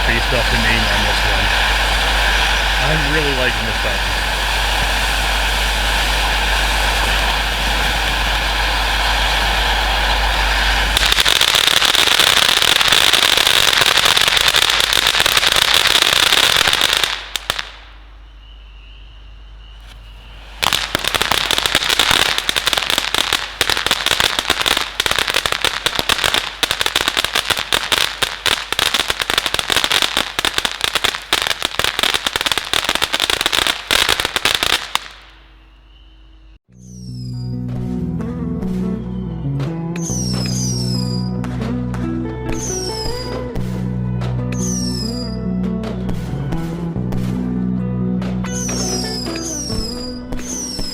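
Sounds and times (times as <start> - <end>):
firework fountain crackling: 0.0 - 18.0, 19.8 - 35.6, 40.0 - 41.1, 42.6 - 43.4, 44.6 - 45.3, 48.6 - 50.9
firework fountain hissing: 0.0 - 18.0, 19.8 - 35.6, 40.0 - 41.1, 42.6 - 43.4, 44.6 - 45.3, 48.6 - 50.9.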